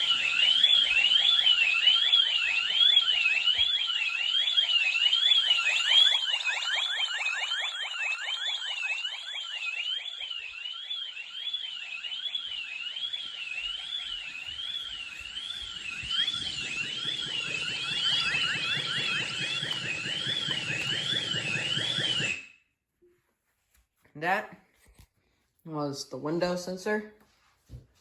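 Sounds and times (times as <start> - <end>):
high warbling alarm siren: 0.0 - 22.7
rapid rising chirps: 13.0 - 22.4.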